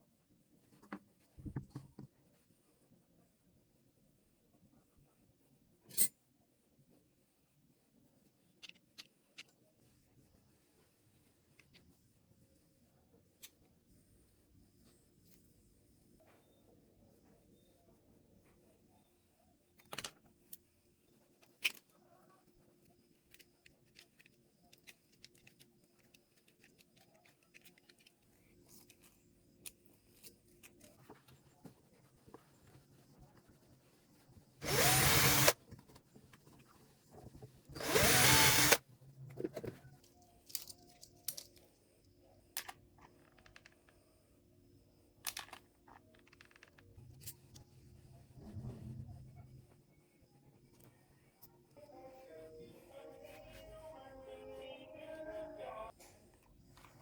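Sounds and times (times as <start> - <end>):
small power drill running: 34.6 - 35.6, 37.7 - 38.8.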